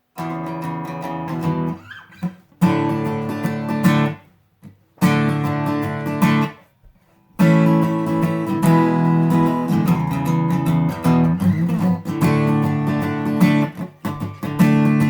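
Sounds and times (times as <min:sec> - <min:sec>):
acoustic guitar strumming chords: 0:00.1 - 0:06.7, 0:07.3 - 0:15.0.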